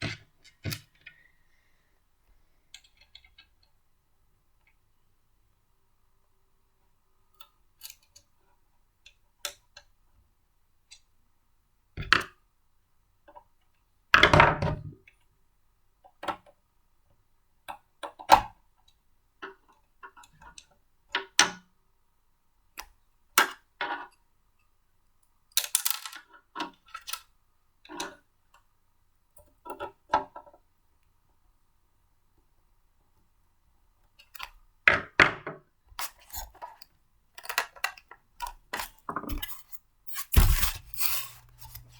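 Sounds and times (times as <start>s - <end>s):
blender parts clicking and rattling: 39.3s - 41.9s.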